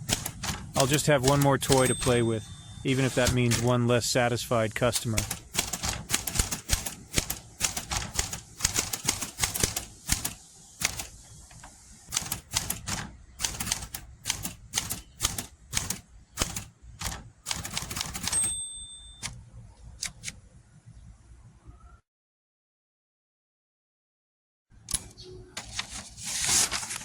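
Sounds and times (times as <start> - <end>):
typewriter key strikes: 0.0 - 3.8, 5.0 - 11.2, 12.1 - 19.4, 20.0 - 20.4
typewriter margin bell: 0.0 - 3.8, 4.9 - 11.2, 12.1 - 19.4.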